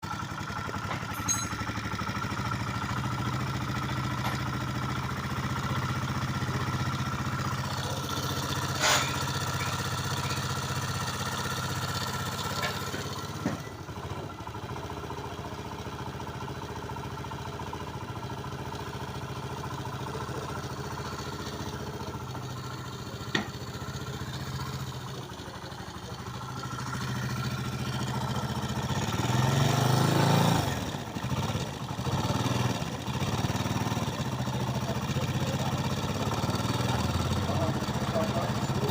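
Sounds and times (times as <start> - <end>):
vehicle engine idling: 0.0 - 38.9.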